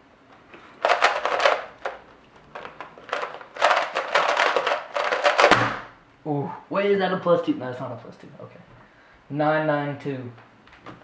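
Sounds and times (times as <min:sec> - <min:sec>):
puzzle cube clicking: 0:00.8 - 0:05.8.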